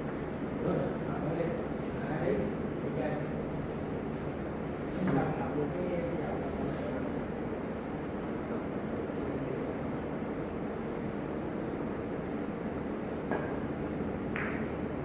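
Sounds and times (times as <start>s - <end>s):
low room murmur: 0.0s - 15.0s
insect chirping: 1.8s - 3.1s, 4.4s - 5.8s, 7.9s - 9.1s, 10.2s - 12.1s, 13.9s - 15.0s.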